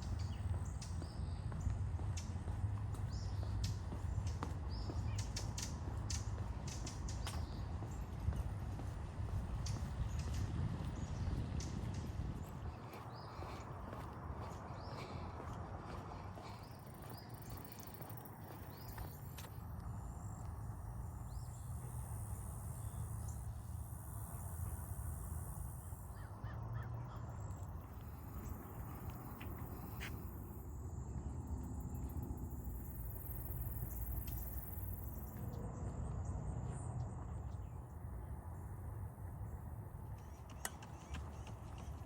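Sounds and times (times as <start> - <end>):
steady low rumble: 0.0 - 40.3.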